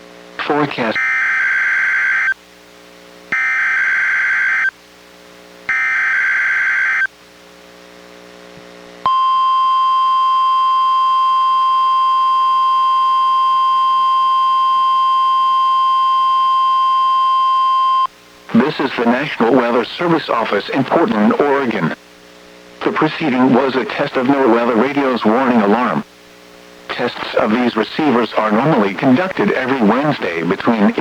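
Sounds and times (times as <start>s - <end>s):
steady warning alarm tone: 0.9s - 2.4s, 3.4s - 4.7s, 5.7s - 7.1s, 9.1s - 18.1s.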